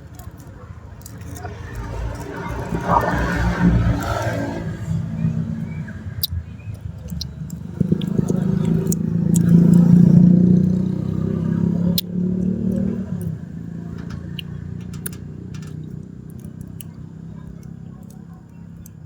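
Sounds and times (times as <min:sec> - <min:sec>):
vehicle engine humming: 0:00.0 - 0:19.0
small clicks: 0:00.1 - 0:02.3, 0:06.2 - 0:09.9, 0:12.0 - 0:19.0.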